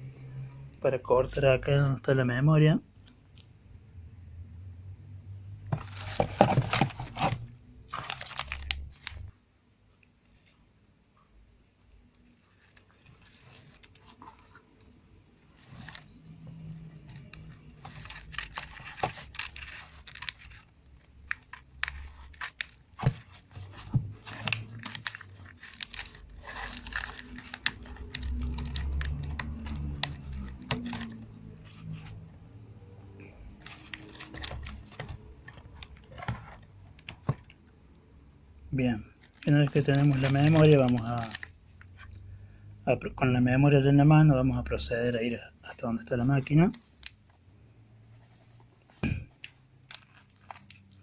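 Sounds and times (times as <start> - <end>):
packaging crinkling and tearing: 5.8 - 9.3, 12.4 - 14.6, 15.6 - 31.3, 33.6 - 37.1, 39.2 - 42.2, 49.8 - 51.0.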